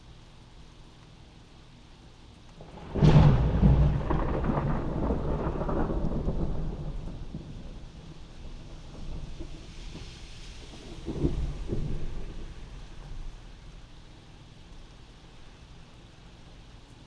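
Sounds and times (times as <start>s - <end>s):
steady rain: 0.0s - 17.0s
thunder crack and rumble: 2.6s - 15.4s.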